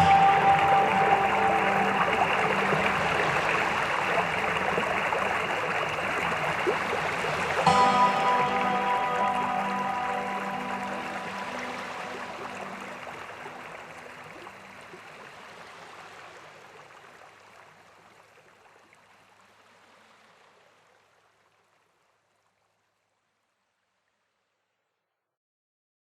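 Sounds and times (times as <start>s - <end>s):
soft music: 0.0s - 15.1s
rushing waterfall: 0.0s - 21.4s.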